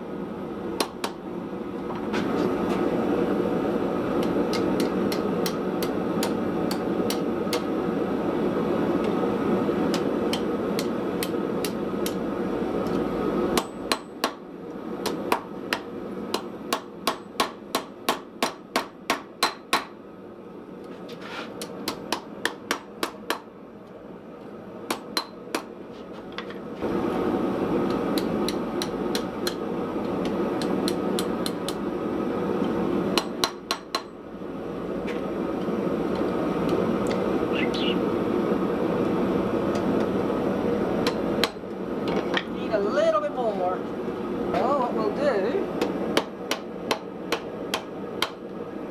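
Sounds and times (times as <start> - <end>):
hammer striking steel on anvil: 4.2 - 7.7, 13.6 - 14.4, 15.0 - 19.9.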